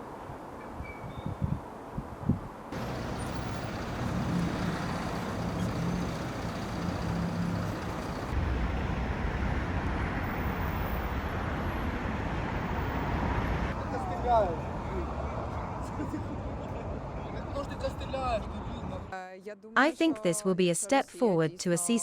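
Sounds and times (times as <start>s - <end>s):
engine hum: 2.7s - 9.1s
passing cars and heavy vehicles: 2.7s - 17.3s.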